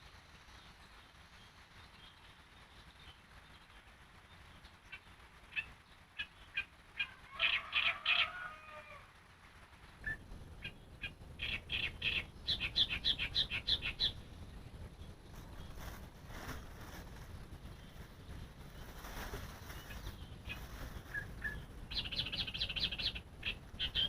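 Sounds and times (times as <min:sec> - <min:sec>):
bird singing quick chirps: 0:10.0 - 0:14.2, 0:19.7 - 0:24.0.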